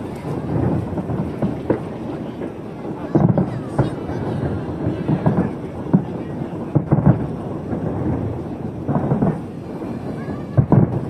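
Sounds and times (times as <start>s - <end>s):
continuous rumble: 0.0s - 11.0s
fireworks booming: 0.0s - 11.0s.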